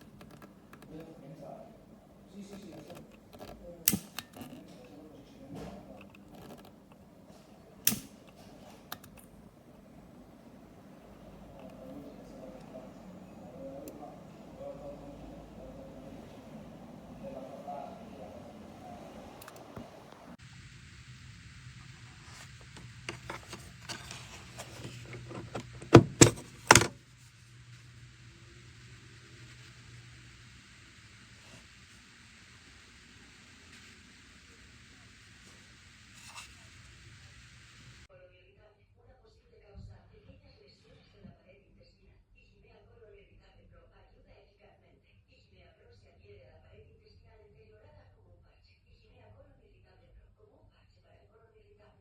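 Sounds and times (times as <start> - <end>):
faint handling noise: 0.0 - 20.4, 21.8 - 28.2
low steady hum: 0.0 - 38.1
lighter click: 3.8 - 4.4, 7.8 - 9.3
sharp click: 3.8 - 4.6, 7.8 - 9.3.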